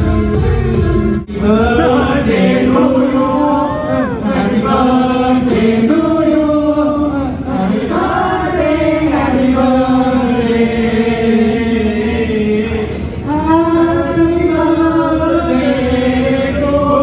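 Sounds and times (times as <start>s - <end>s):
crowd singing in unison: 0.0s - 17.0s.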